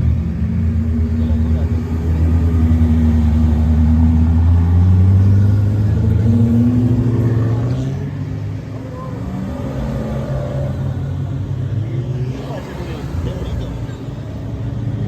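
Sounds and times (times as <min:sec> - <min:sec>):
car engine at low revs: 0:00.0 - 0:15.0.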